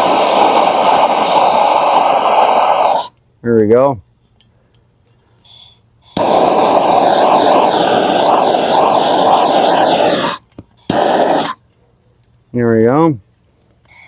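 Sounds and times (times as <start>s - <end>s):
blowtorch flame blasts: 0.0s - 3.1s, 6.1s - 11.6s.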